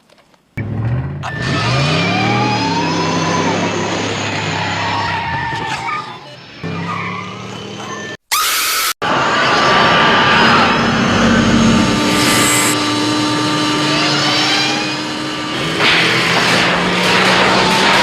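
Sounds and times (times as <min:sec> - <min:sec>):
tyres skidding: 0:00.0 - 0:08.3, 0:09.1 - 0:18.0
car engine revving: 0:00.6 - 0:05.1, 0:09.2 - 0:18.0.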